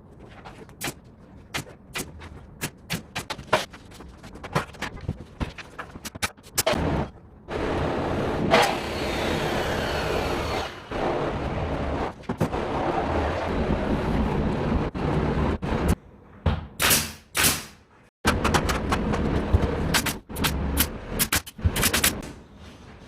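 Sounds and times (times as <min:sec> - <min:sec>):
loud carpentry noise: 0:06.6 - 0:13.5.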